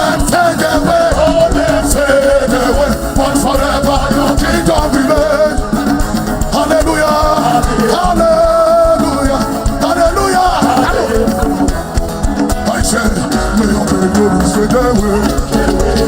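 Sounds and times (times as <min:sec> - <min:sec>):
band playing gospel music: 0:00.0 - 0:16.0
voices singing slow melody: 0:00.0 - 0:16.0.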